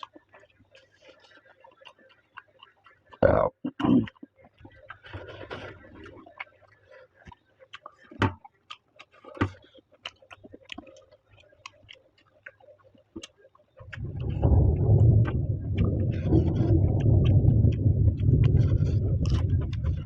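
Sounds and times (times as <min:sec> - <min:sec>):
person chewing: 0:00.0 - 0:20.0
loud rumbling noise: 0:13.9 - 0:20.0.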